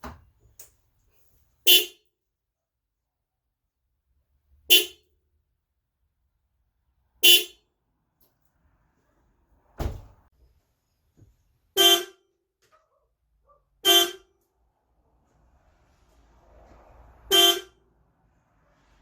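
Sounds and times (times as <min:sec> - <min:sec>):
car horn honks: 0:01.7 - 0:02.0, 0:04.7 - 0:05.0, 0:07.2 - 0:07.6, 0:11.8 - 0:12.3, 0:13.8 - 0:14.4, 0:17.3 - 0:17.9.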